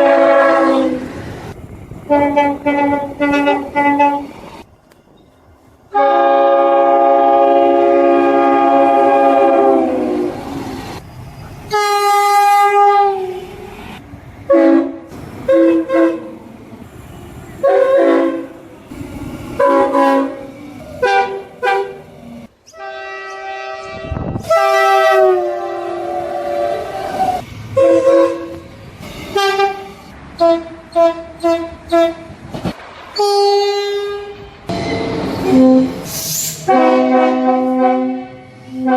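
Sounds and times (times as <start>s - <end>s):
train horn blasts: 0.0s - 1.1s, 2.1s - 4.4s, 5.9s - 10.6s, 11.7s - 13.6s, 14.5s - 16.4s, 17.6s - 18.6s, 19.6s - 22.1s, 22.7s - 28.7s, 29.3s - 32.3s, 33.2s - 38.9s
passing train rumble: 0.0s - 38.9s.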